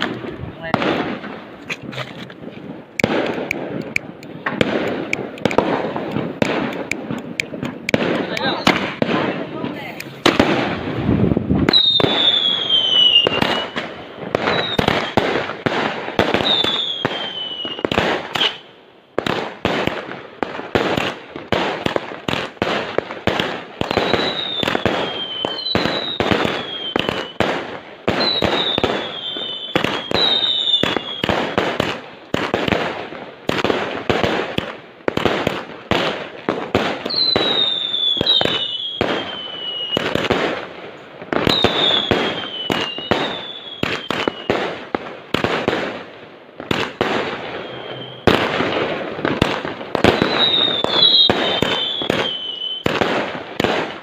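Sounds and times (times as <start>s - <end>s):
fireworks bangs and crackles: 0.0s - 54.0s
whistling shells: 11.7s - 13.8s, 14.5s - 15.2s, 23.9s - 27.4s, 37.1s - 40.0s, 41.4s - 44.5s, 47.4s - 48.5s, 50.0s - 52.9s.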